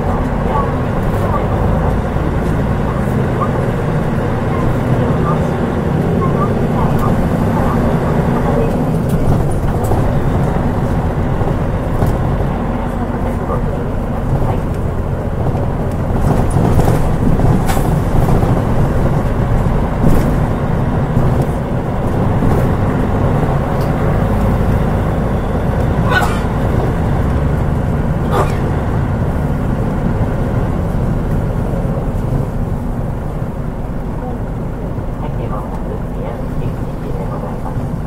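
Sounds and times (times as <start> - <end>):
bus diesel engine drone: 0.0 - 38.0
road noise: 0.0 - 38.0.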